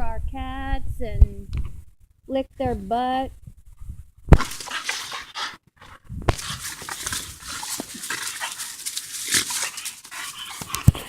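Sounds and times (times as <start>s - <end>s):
dogs breathing hard: 4.4s - 11.0s.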